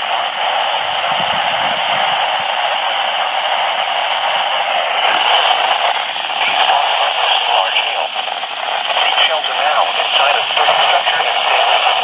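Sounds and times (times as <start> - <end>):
radio static hiss: 2.7 - 12.0.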